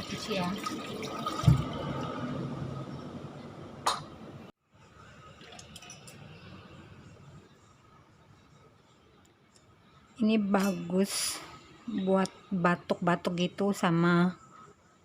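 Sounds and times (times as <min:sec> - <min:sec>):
water running at kitchen sink: 0:00.0 - 0:02.3.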